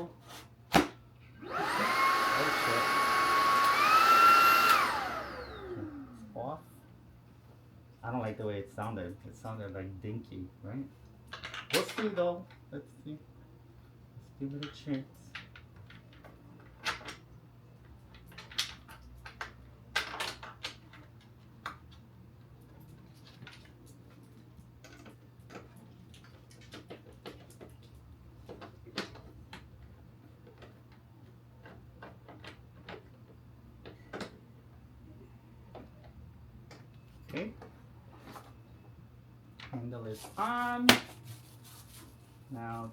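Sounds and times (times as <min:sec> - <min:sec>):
plastic parts clicking and knocking: 0:11.3 - 0:12.2, 0:14.5 - 0:22.0, 0:24.8 - 0:34.5.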